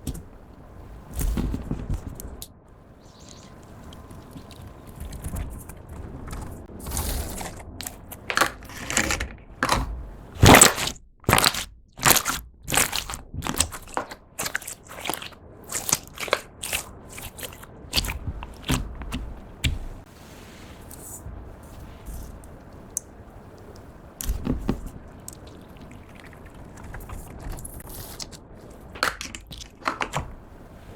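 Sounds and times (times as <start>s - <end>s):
slime crackling and popping: 10.4s - 19.8s.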